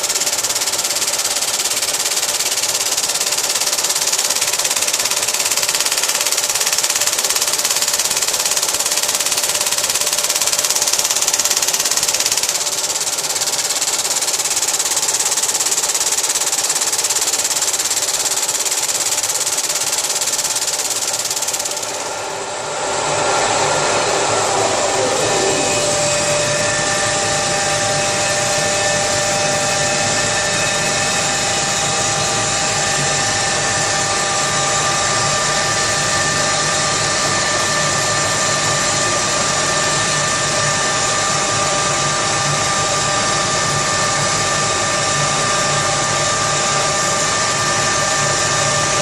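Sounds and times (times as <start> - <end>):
lathe running with hiss: 0.0 - 49.0
falling tone: 21.8 - 28.0.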